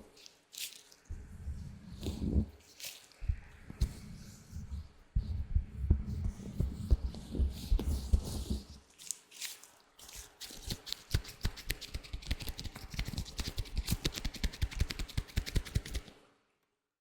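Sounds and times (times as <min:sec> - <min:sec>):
latex gloves rubbing: 0:00.0 - 0:16.2
crackling taps of latex gloves: 0:06.3 - 0:16.2.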